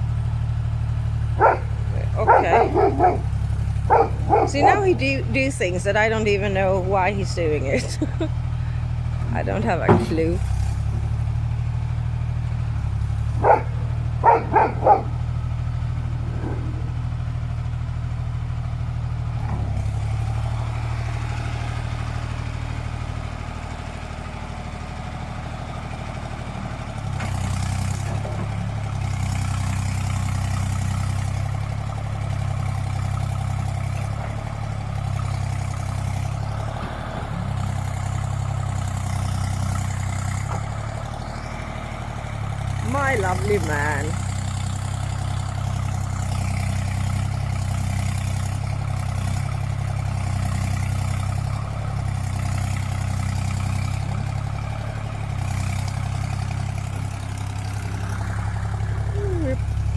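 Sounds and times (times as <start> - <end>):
excavator diesel engine running: 0.0 - 59.9
dog barking: 1.4 - 5.0, 13.4 - 15.2, 16.3 - 16.9, 58.0 - 59.7.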